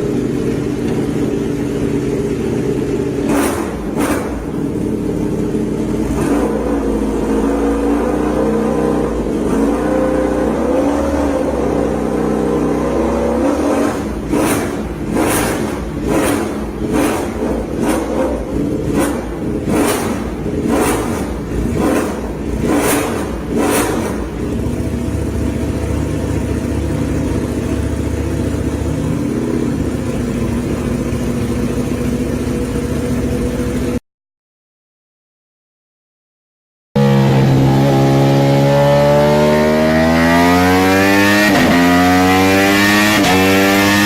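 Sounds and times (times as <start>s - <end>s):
motorcycle engine idling: 0.0s - 7.5s, 14.0s - 34.0s
motorcycle engine revving: 0.0s - 34.0s, 37.0s - 44.0s.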